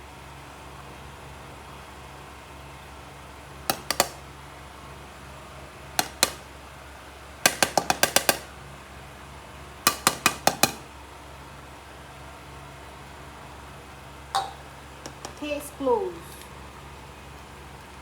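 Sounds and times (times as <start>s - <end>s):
utensil clinking on cooking pot: 14.4s - 15.4s.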